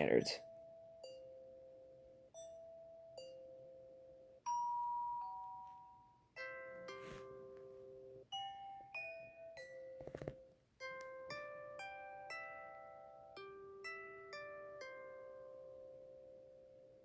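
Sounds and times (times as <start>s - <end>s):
doorbell chimes: 0.0s - 10.2s.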